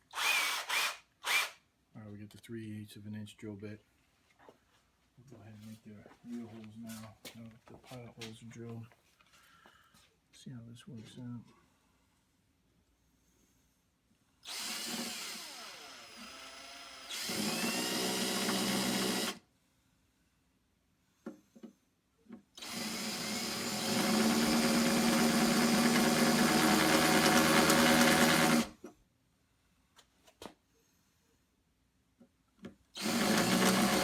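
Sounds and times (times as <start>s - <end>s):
power drill boring holes: 0.1s - 1.6s, 14.4s - 19.4s, 22.6s - 28.8s, 33.0s - 34.0s.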